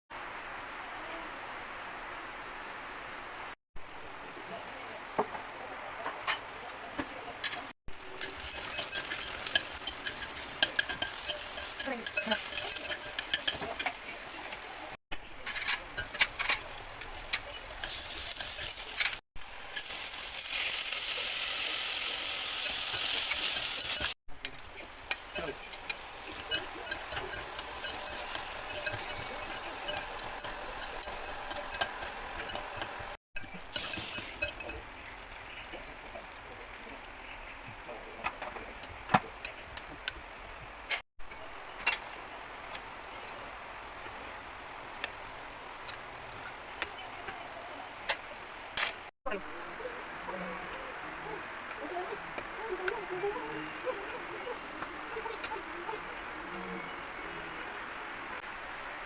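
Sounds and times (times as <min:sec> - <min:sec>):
utensil scraping and clinking pot: 0:07.4 - 0:37.6
food sizzling in a pot: 0:07.9 - 0:37.6.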